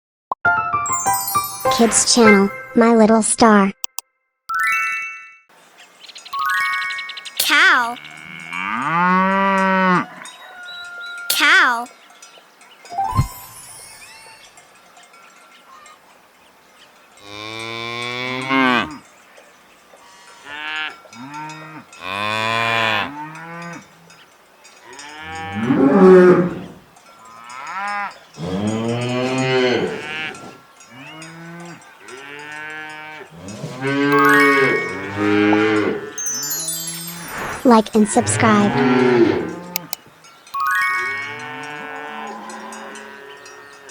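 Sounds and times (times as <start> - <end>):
cows mooing: 8.0 - 11.0, 17.2 - 19.0, 20.0 - 23.9, 24.9 - 36.2, 38.2 - 40.0, 41.2 - 43.9.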